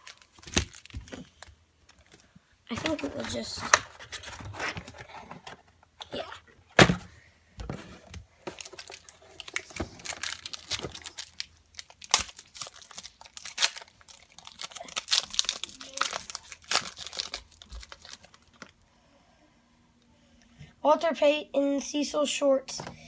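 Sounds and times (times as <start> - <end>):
foil wrapper crinkling and tearing: 0.0 - 5.0, 8.5 - 18.8.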